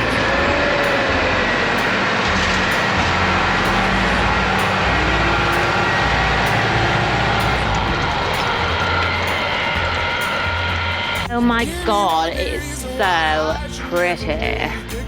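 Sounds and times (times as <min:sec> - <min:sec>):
tractor engine running under load: 0:00.0 - 0:12.3.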